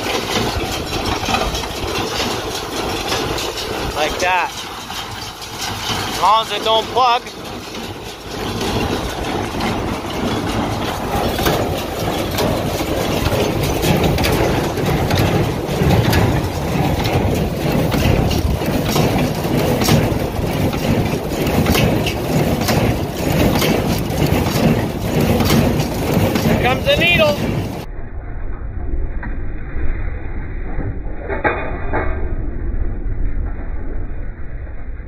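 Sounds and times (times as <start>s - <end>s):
baler mechanism clacking: 0.0s - 27.9s
tractor engine running: 0.0s - 27.9s
wind buffeting microphone: 7.4s - 27.9s.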